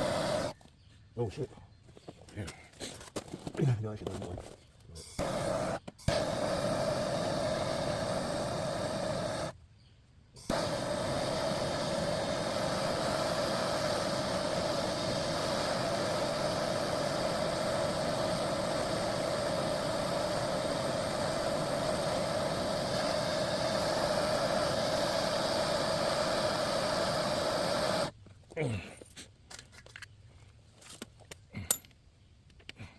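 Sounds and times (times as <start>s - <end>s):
torch flame roaring: 0.0s - 0.6s, 5.0s - 9.6s, 10.4s - 28.2s.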